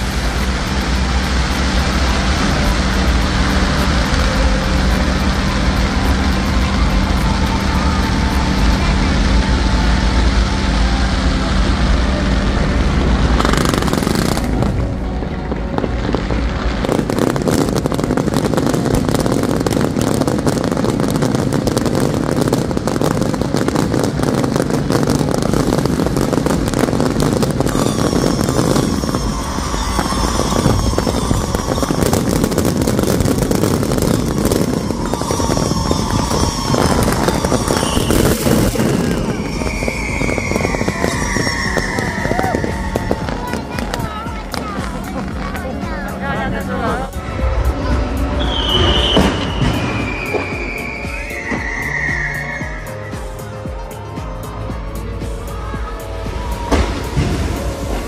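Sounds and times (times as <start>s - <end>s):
firework whistles: 0.0s - 54.6s, 55.3s - 58.0s
fireworks crackling: 0.0s - 58.0s
low rumble: 0.0s - 58.0s.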